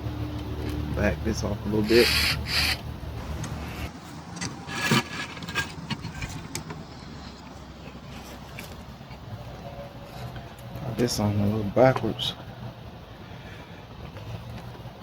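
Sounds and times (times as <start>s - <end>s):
bicycle parts scraping: 1.7s - 8.8s.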